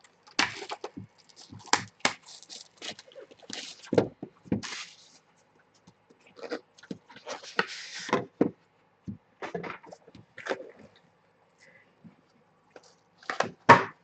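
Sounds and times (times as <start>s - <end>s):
packaging rustling and tearing: 0.4s - 4.0s.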